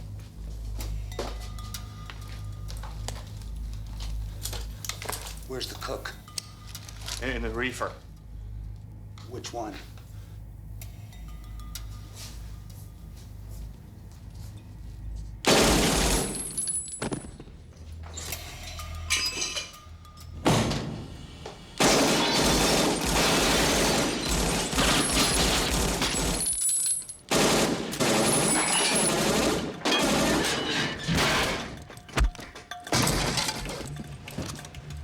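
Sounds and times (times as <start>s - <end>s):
automatic gunfire bursts: 15.5s - 16.6s, 21.8s - 26.5s, 27.3s - 30.6s
things breaking and shattering: 21.8s - 27.3s, 28.0s - 34.3s.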